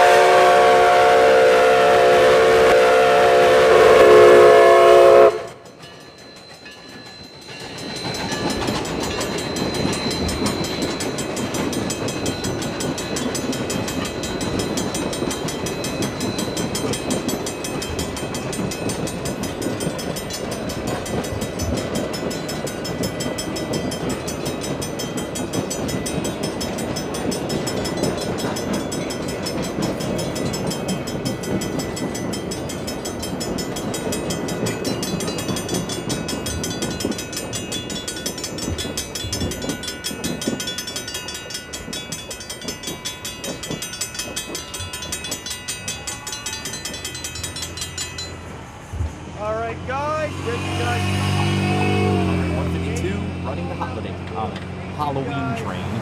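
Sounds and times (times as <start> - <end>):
steam whistle chord: 0.0 - 5.6
train wheels on rails: 0.0 - 56.0.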